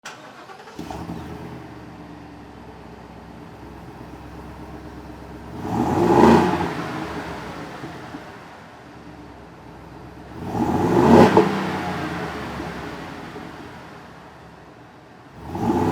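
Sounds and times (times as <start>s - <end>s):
engine revving: 0.0s - 1.8s, 3.6s - 8.5s, 10.1s - 14.4s, 15.3s - 15.9s
engine idling with steady burble: 0.0s - 10.6s, 12.0s - 15.9s
truck engine starting: 0.0s - 15.9s.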